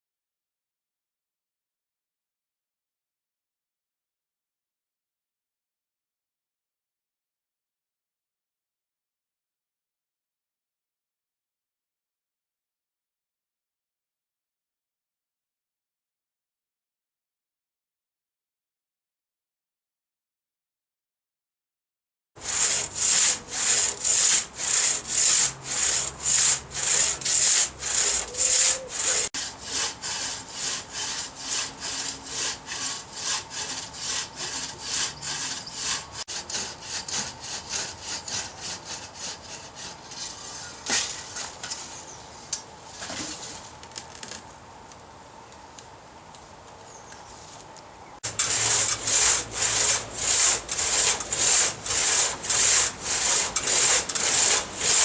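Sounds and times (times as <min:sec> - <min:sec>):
hand saw cutting log: 0:22.4 - 0:42.0, 0:48.2 - 0:55.0.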